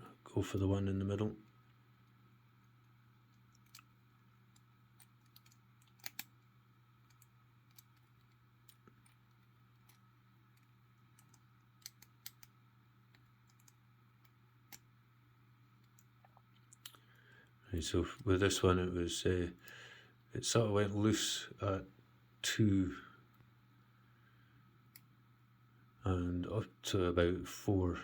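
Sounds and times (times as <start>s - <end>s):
low steady hum: 0.0s - 28.0s
padlock number wheels clicking: 4.5s - 6.4s.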